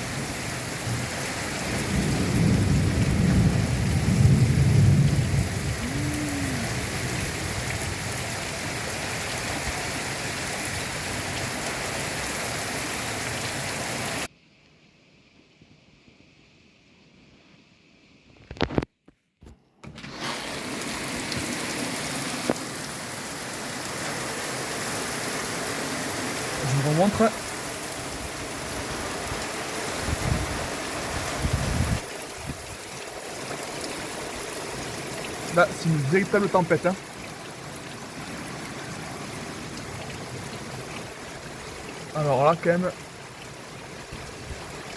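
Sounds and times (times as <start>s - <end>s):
heavy rain pouring: 0.0s - 14.3s, 20.0s - 44.9s
low thunder rumble: 0.8s - 8.4s
wind gusts on microphone: 0.8s - 8.8s, 27.4s - 32.9s, 44.0s - 44.9s.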